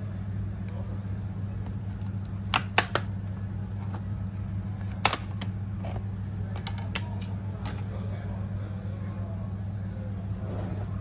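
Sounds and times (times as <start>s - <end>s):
steady low hum: 0.0s - 11.0s
clicks of plastic laptop case: 2.5s - 3.1s, 4.8s - 5.6s, 6.6s - 7.3s.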